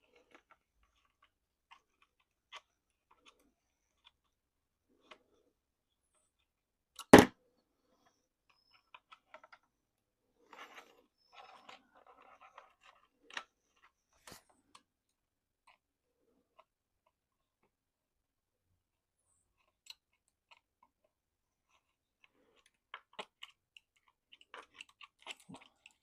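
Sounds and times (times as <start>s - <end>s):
small parts clicking and scraping: 0.0s - 7.1s, 8.0s - 9.8s, 10.4s - 17.8s, 19.2s - 26.0s
sharp knock: 7.1s - 7.3s.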